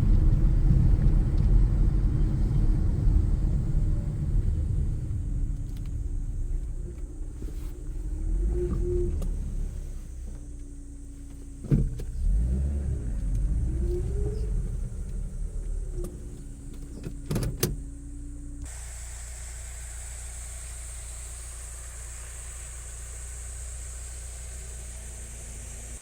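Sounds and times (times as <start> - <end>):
low rumble: 0.0 - 11.2, 11.8 - 18.8
low hum: 0.0 - 26.0
steady hiss: 14.2 - 26.0.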